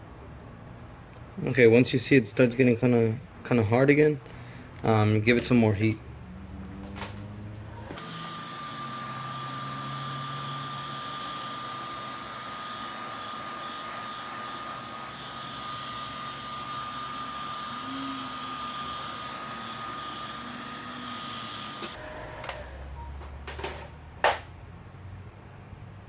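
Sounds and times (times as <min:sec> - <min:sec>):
hot-air blower whining: 0:06.6 - 0:23.1.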